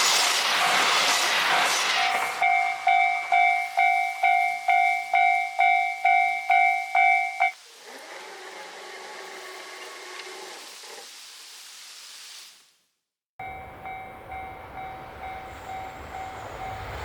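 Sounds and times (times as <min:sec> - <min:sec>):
rush of passing train: 0:00.0 - 0:10.6, 0:13.4 - 0:17.0
level crossing bell ringing: 0:01.6 - 0:07.6, 0:13.4 - 0:17.0.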